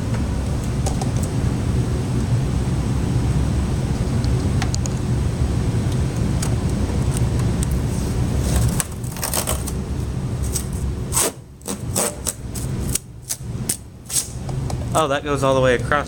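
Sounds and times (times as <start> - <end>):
packing tape pulled off plastic: 8.5 - 9.8, 10.4 - 14.4.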